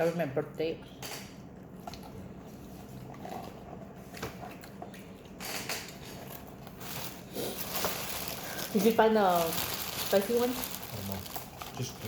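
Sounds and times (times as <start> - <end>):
soft chewing: 0.8 - 6.8.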